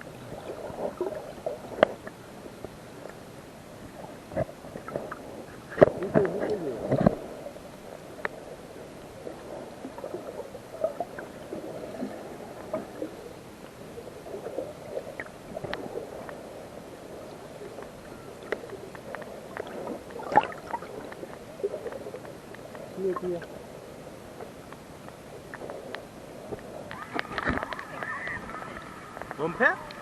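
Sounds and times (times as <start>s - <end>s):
water sloshing and gurgling: 0.0s - 30.0s
bubbling: 14.2s - 23.6s.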